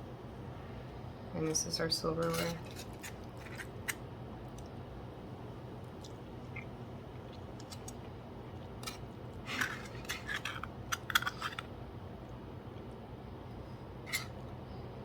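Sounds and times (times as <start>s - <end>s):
steady low hum: 0.0s - 15.0s
cutlery clicking and scraping: 8.8s - 11.6s.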